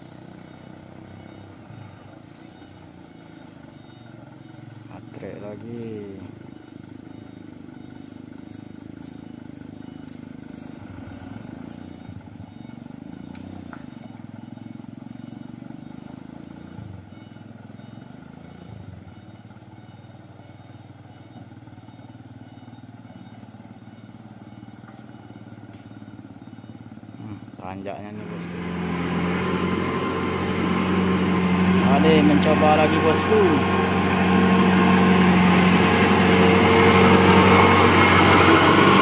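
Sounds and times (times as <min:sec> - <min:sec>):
diesel truck engine under load: 0:28.0 - 0:39.0.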